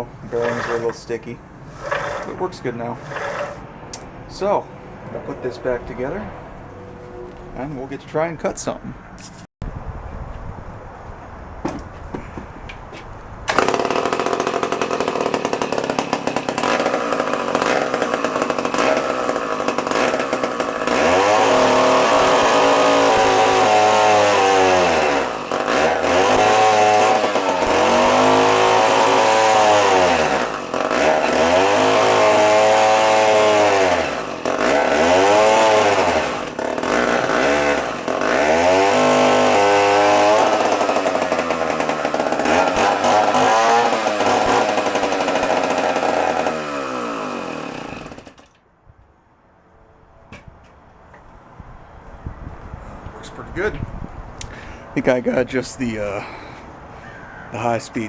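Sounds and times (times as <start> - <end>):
chainsaw engine revving: 0.0 - 7.4, 13.5 - 48.5, 54.4 - 56.7.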